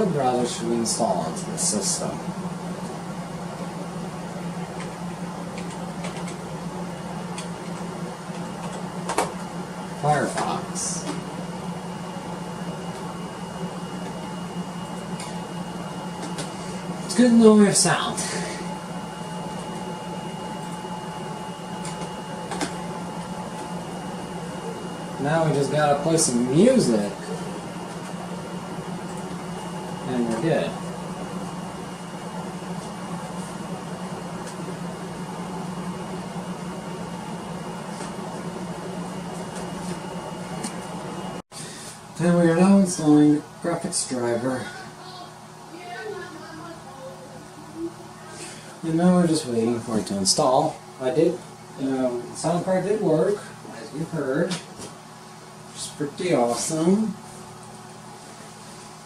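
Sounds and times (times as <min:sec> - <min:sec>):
computer fans humming: 0:00.0 - 0:59.0
thin high whine: 0:09.6 - 0:54.5.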